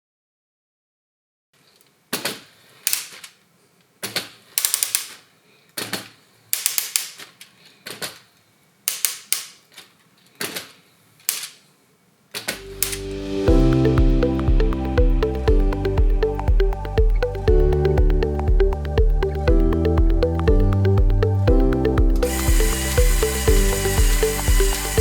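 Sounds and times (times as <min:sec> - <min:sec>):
toy gearbox clicking rattles: 0:04.6 - 0:05.2
music: 0:12.6 - 0:25.0.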